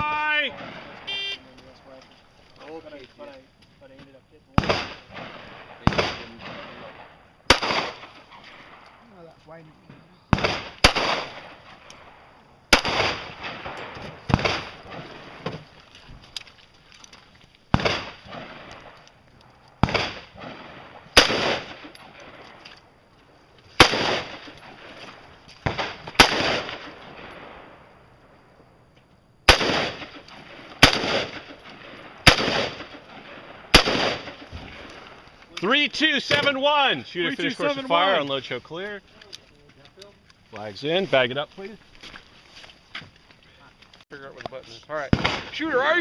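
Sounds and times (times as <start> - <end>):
gunshots echoing: 4.6 - 9.0, 10.3 - 15.5, 17.7 - 19.0, 19.8 - 22.6, 23.8 - 28.0, 29.5 - 35.2, 45.1 - 46.0.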